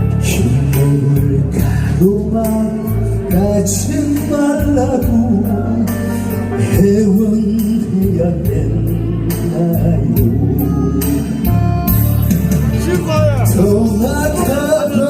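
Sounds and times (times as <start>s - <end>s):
ballad backing track: 0.0s - 15.0s
person singing: 0.0s - 15.0s.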